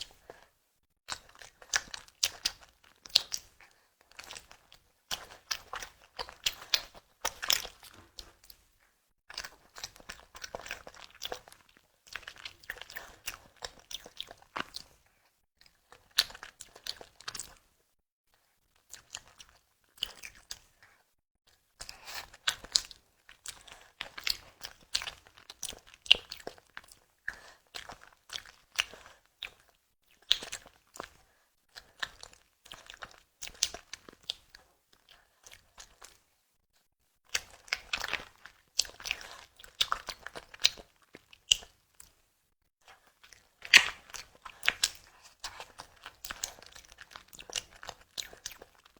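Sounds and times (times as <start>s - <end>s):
person chewing with mouth clicks: 1.1s - 8.6s, 9.3s - 15.0s, 15.6s - 17.7s, 18.7s - 21.0s, 21.8s - 36.2s, 37.3s - 42.2s, 42.8s - 48.9s
mouth clicks and smacks: 43.2s - 48.6s.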